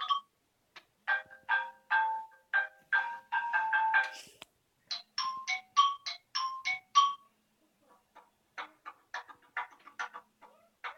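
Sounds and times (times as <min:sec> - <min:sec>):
bell-like ringtone: 0:01.1 - 0:04.2, 0:04.9 - 0:07.3
electronic ringtone notes: 0:01.1 - 0:04.2, 0:04.9 - 0:07.3.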